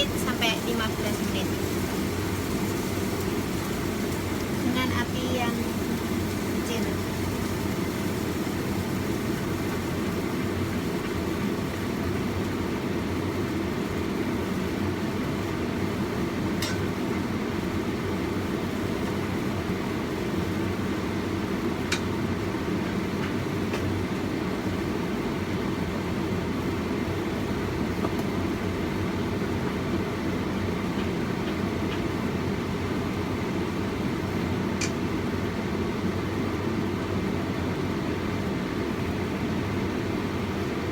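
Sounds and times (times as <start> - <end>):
gas stove flame humming: 0.0 - 40.9.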